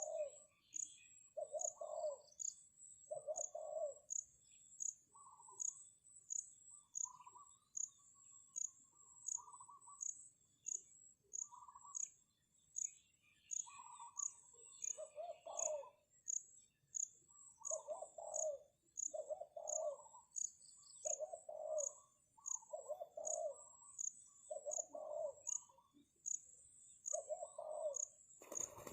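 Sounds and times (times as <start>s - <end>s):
dove cooing: 0.0s - 0.4s, 1.4s - 2.2s, 3.1s - 4.1s, 14.9s - 16.0s, 17.6s - 20.2s, 21.0s - 23.9s, 24.5s - 25.9s, 27.1s - 28.9s
insect chirping: 27.9s - 28.9s.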